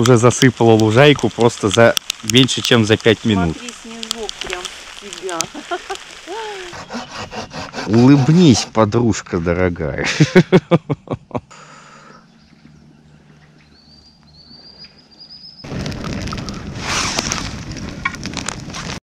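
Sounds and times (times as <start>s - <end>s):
person's voice: 0.0s - 6.8s, 7.8s - 9.9s
wind gusting against microphone: 15.6s - 19.0s.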